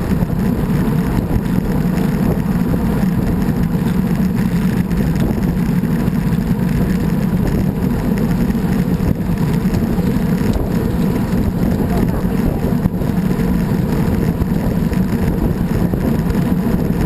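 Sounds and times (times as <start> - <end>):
rolling road noise: 0.0 - 17.0
wind buffeting microphone: 0.0 - 17.0.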